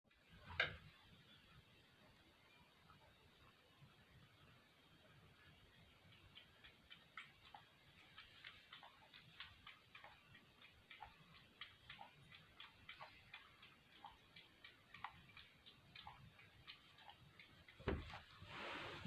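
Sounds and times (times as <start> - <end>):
cat lapping milk: 6.0 - 18.4.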